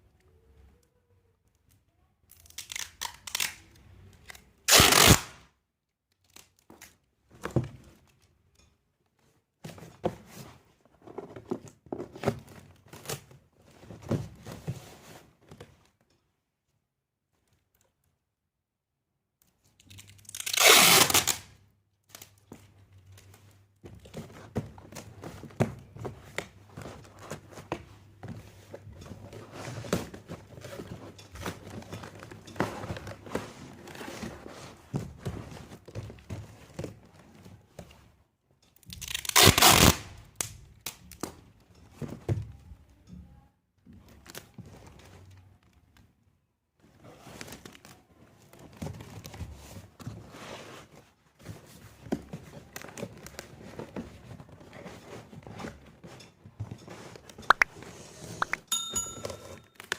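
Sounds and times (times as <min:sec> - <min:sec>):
packing material tearing: 0:04.7 - 0:05.4, 0:19.9 - 0:21.5, 0:39.0 - 0:40.1
crinkling and rustling: 0:05.9 - 0:18.2, 0:19.4 - 0:59.9.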